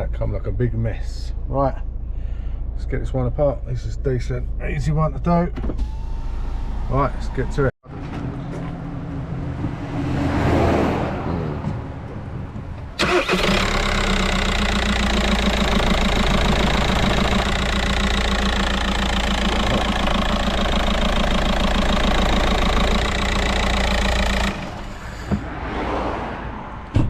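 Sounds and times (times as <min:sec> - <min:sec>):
diesel engine idling with knocking: 0:11.6 - 0:25.4.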